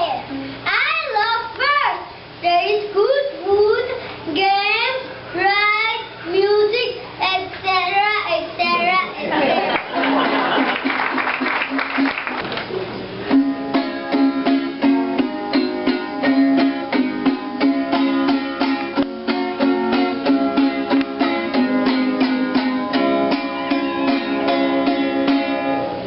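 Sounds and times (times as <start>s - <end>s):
plucked string music over a beat: 13.3s - 26.0s.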